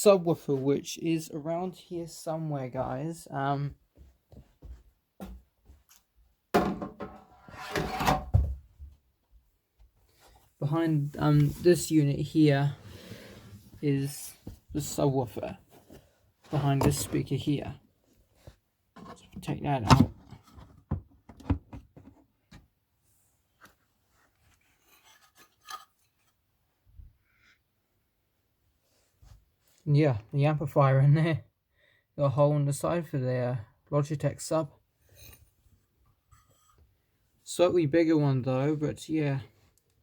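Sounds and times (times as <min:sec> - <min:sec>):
hard objects knocking and scraping: 0:06.6 - 0:08.6.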